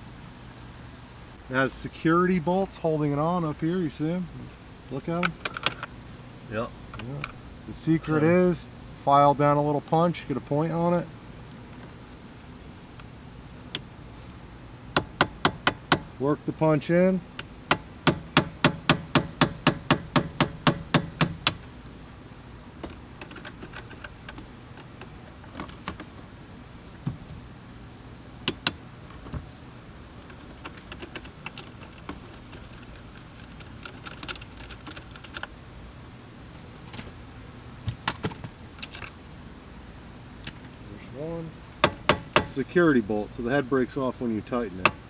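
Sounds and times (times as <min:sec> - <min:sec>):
hammer striking metal punch: 0:15.0 - 0:16.2, 0:17.7 - 0:21.7, 0:41.8 - 0:42.7
light clicks and taps of punch: 0:17.4 - 0:21.7.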